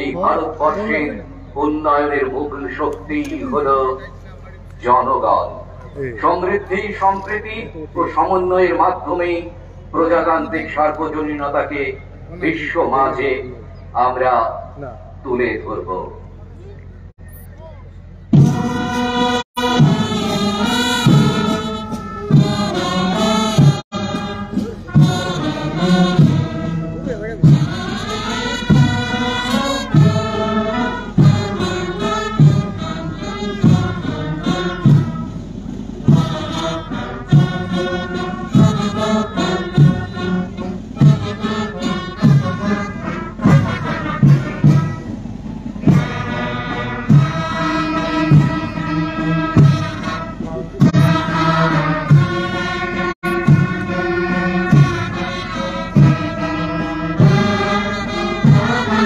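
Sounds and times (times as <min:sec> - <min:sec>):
steady drum beat: 0:18.3 - 0:59.0
group of voices singing: 0:50.9 - 0:53.1, 0:56.1 - 0:59.0.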